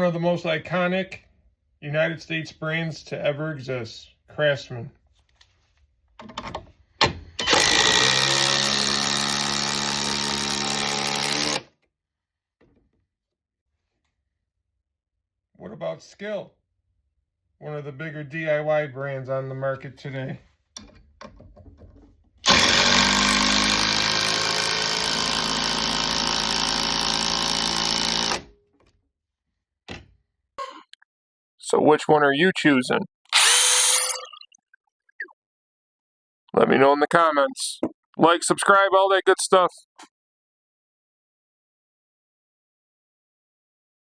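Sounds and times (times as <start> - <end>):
impact driver running: 7.4 - 11.7, 22.4 - 28.6.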